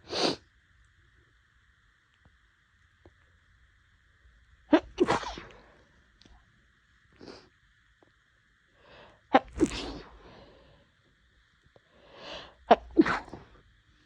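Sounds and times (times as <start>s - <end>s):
woman sneezing: 4.7s - 5.6s, 9.4s - 10.1s, 12.7s - 13.4s.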